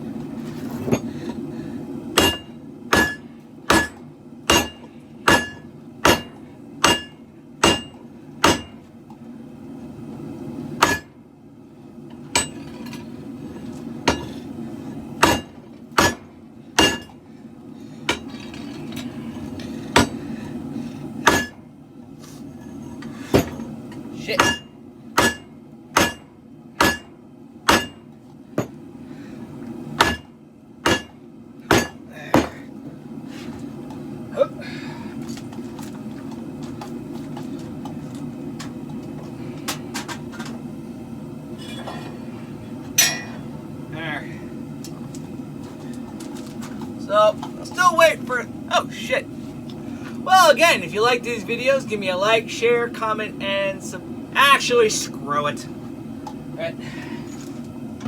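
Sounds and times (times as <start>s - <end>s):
hammer striking steel on anvil: 2.2s - 8.8s, 10.8s - 11.2s, 12.4s - 12.7s, 14.1s - 14.4s, 15.2s - 17.1s, 21.2s - 21.6s, 24.4s - 27.1s, 27.7s - 28.0s, 30.0s - 32.5s, 43.0s - 43.4s.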